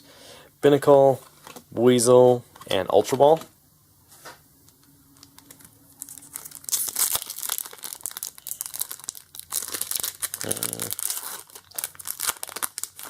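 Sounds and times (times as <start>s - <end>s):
foil wrappers crinkling and tearing: 5.2s - 13.0s.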